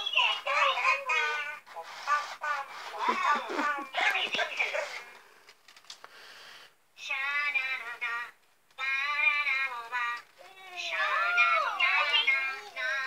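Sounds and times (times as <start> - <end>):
toys singing in electronic voices: 7.0 - 13.0.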